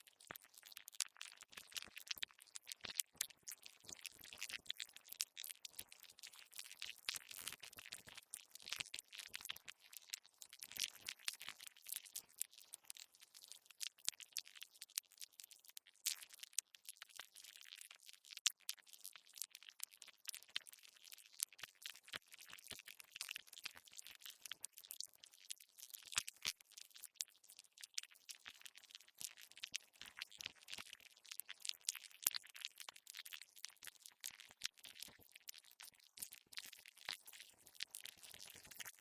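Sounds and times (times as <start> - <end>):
crackle of tiny clicks and scratches: 0.0 - 39.0.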